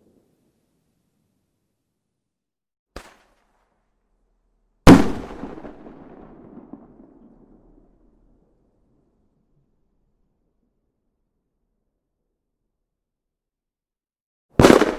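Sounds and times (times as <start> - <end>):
firework bang rumbling: 14.6 - 14.9.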